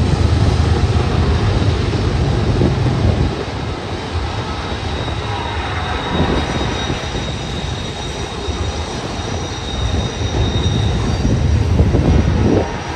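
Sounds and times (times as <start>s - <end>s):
train cars rumbling on rails: 0.0s - 12.9s
train brake squeal: 4.3s - 12.2s.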